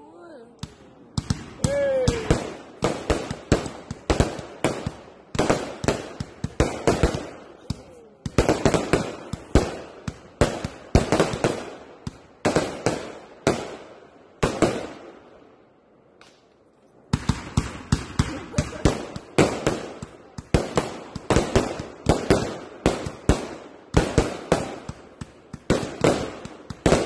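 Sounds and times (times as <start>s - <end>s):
fireworks banging and crackling: 0.4s - 15.5s, 16.2s - 27.0s.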